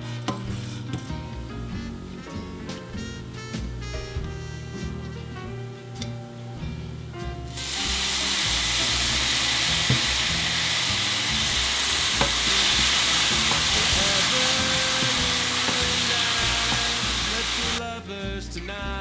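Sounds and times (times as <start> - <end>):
soft background music: 0.0 - 19.0
food sizzling in a frying pan: 7.5 - 17.8
stirring clicks: 7.5 - 17.8.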